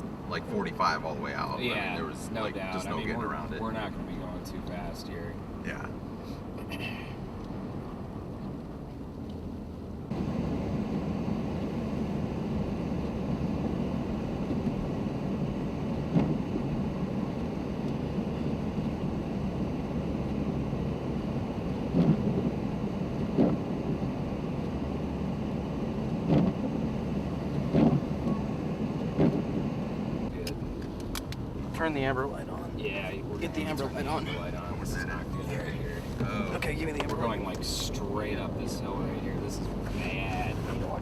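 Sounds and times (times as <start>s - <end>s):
vehicle driving on snow: 0.0s - 41.0s
short dull thumps: 29.1s - 29.5s.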